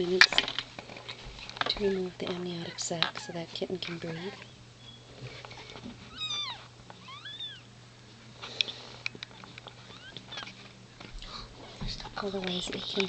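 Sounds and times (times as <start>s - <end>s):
cat mewing: 6.1s - 7.7s.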